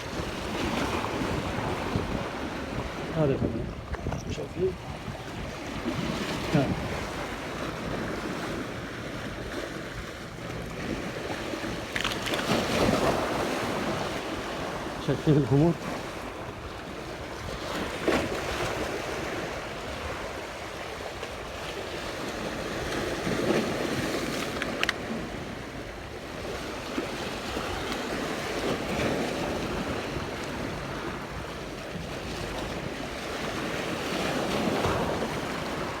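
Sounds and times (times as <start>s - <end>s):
sea waves washing in: 0.0s - 36.0s
wind buffeting the microphone: 0.0s - 36.0s
sharp click: 24.2s - 25.0s.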